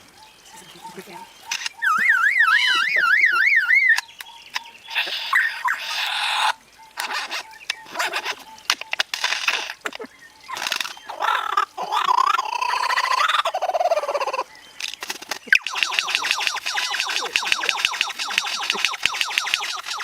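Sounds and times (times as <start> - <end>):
bird mimicking car alarm: 1.5 - 5.9, 15.5 - 20.0
bird clicks and rattling bursts: 10.5 - 11.0, 14.8 - 20.0
bird sweeping zaps: 15.0 - 20.0.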